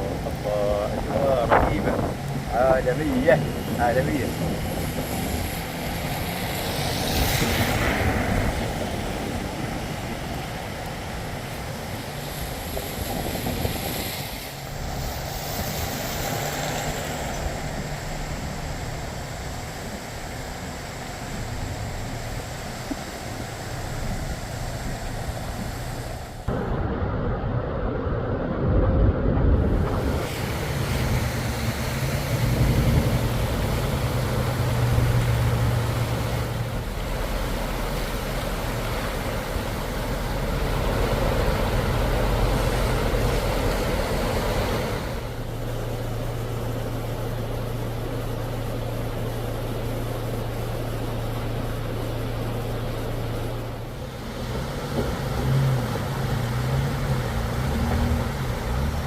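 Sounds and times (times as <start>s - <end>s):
broad rushing noise: 0.0s - 59.0s
vehicle engine humming: 0.0s - 59.0s.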